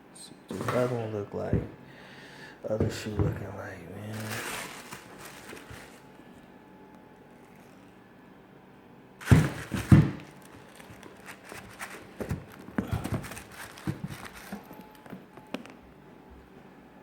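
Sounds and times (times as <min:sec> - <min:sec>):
paper rustling: 0:04.0 - 0:06.1, 0:09.2 - 0:15.2
loud thumps of shoe box: 0:09.2 - 0:10.4, 0:11.5 - 0:14.6.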